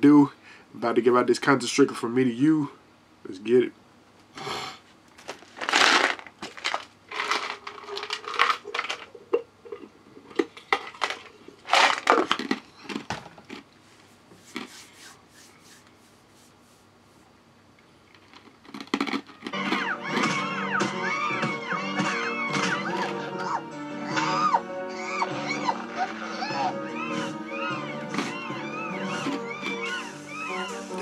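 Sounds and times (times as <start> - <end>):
crinkling and crackling: 5.1 - 16.6, 17.8 - 20.3.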